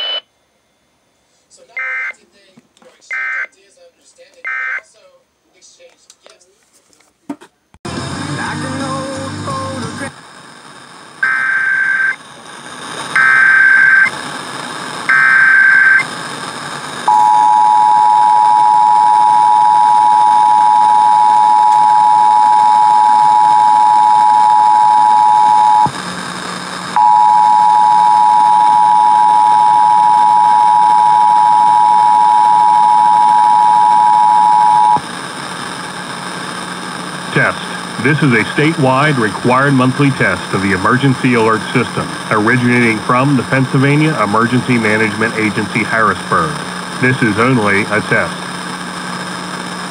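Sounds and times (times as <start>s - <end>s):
low hum: 7.9s - 12.1s
buzzing data bursts: 13.1s - 14.2s, 15.1s - 16.1s, 17.0s - 35.0s.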